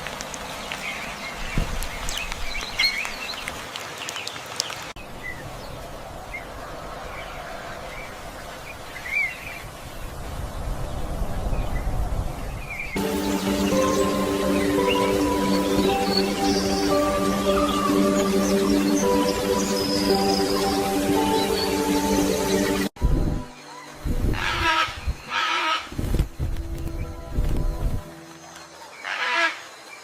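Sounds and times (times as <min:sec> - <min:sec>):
songbirds chirping and calling: 0:11.4 - 0:22.9
music with held notes: 0:13.0 - 0:22.9.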